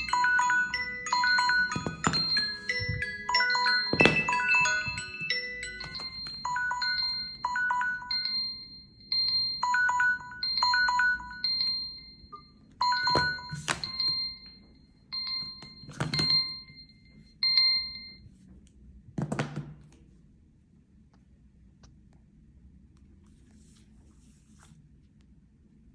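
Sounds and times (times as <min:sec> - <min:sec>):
phone timer alarms beeping: 0:00.0 - 0:18.3.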